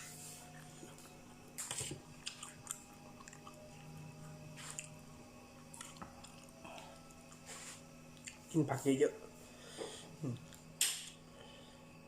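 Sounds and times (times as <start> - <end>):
faint steady hum: 0.0 - 12.0
person chewing food: 0.4 - 8.4.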